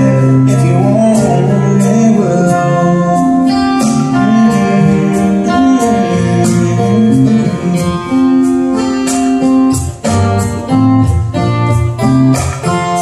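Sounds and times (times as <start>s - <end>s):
bass line: 0.0s - 8.8s
strummed guitar chords: 0.0s - 13.0s.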